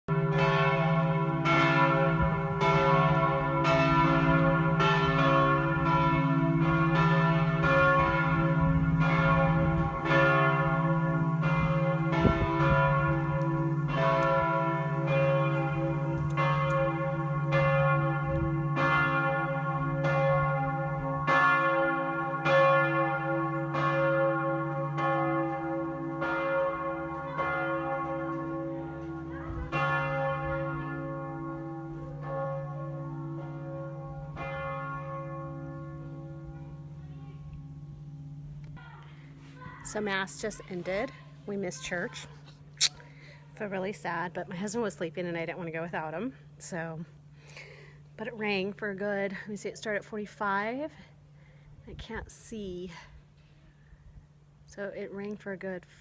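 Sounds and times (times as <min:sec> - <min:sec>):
church bells ringing: 0:00.1 - 0:42.2.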